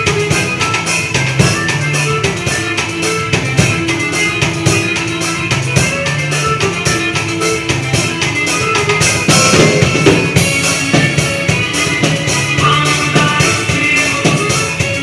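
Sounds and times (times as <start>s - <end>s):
drum kit beat: 0.0s - 15.0s
forro song playing: 0.0s - 15.0s.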